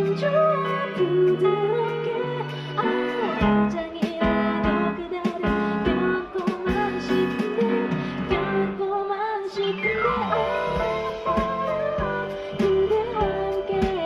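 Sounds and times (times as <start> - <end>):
live band playing pop: 0.0 - 14.0
drum hits: 10.5 - 14.0.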